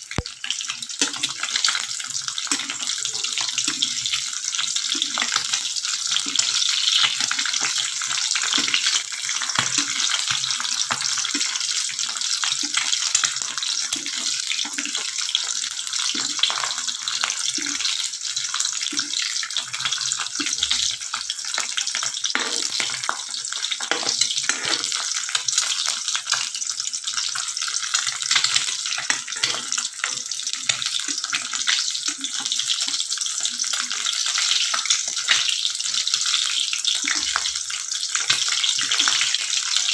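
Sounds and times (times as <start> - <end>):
rice sizzling in a pan: 0.0 - 39.9
utensil scraping a pan: 22.3 - 23.1, 23.8 - 25.2, 29.1 - 29.8.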